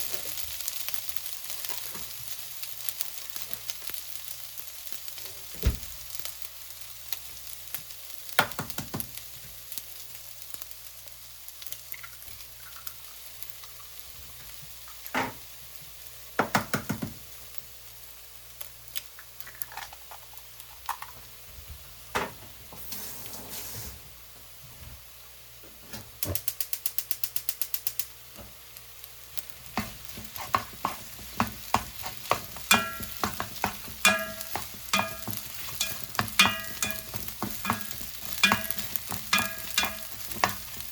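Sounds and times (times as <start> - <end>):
rice sizzling in a pan: 0.0 - 40.9
utensil tapping a pan: 8.4 - 9.2, 16.4 - 17.2, 29.7 - 40.9
utensil scraping a pan: 22.8 - 24.0, 29.8 - 40.9.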